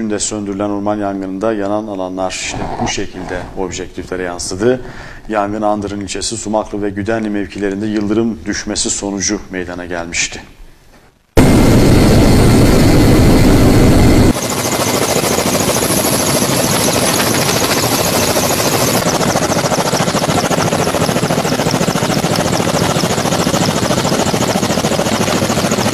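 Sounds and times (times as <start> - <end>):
helicopter rotor chop: 11.4 - 25.9.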